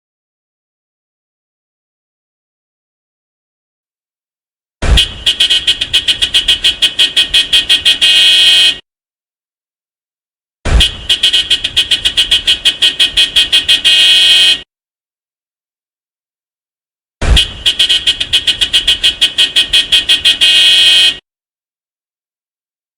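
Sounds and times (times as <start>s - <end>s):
car horn toots: 4.8s - 8.8s, 10.7s - 14.6s, 17.2s - 21.2s.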